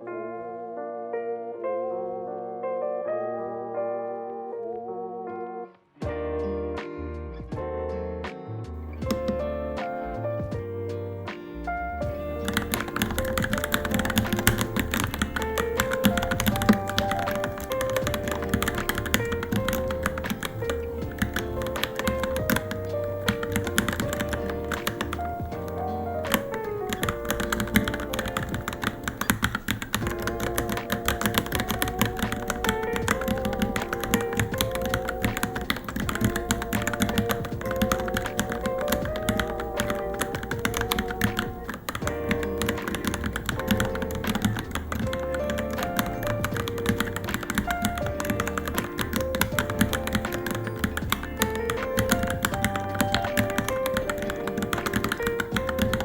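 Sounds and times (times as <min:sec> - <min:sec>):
background music: 0:00.0 - 0:56.0
fast typing on mechanical keyboard: 0:09.0 - 0:09.6, 0:12.1 - 0:56.0.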